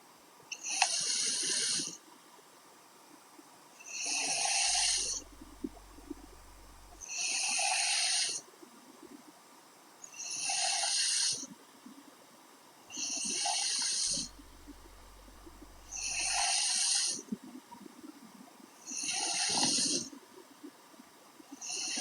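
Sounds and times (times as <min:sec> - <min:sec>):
woman snoring: 0:04.1 - 0:07.0, 0:13.4 - 0:17.0.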